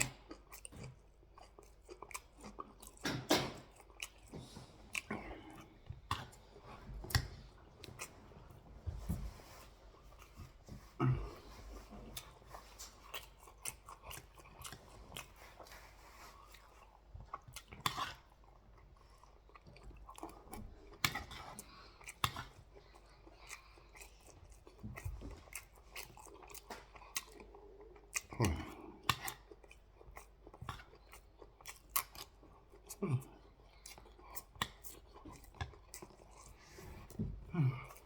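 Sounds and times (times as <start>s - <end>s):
chewing and smacking: 0.0s - 38.0s
food crunching: 0.0s - 38.0s.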